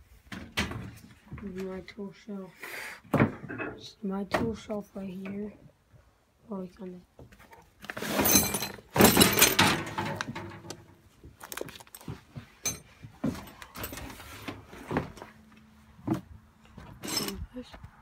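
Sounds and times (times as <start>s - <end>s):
metal tools clattering: 7.8s - 10.8s, 12.6s - 14.6s, 16.9s - 17.4s.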